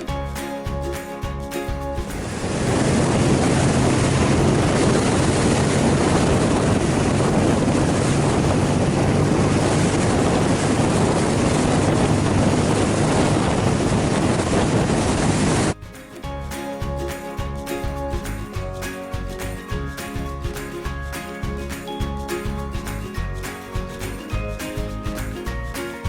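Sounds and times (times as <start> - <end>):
music: 0.0 - 11.4, 15.7 - 26.0
wind rushing over microphone: 1.9 - 15.8
motorcycle engine drone: 2.2 - 15.8.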